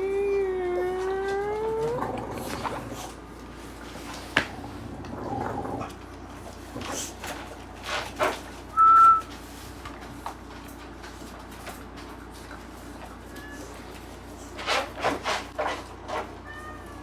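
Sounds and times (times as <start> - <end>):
puppy making soft noises: 0.0 - 3.3
high-pitched whistle: 8.8 - 9.3.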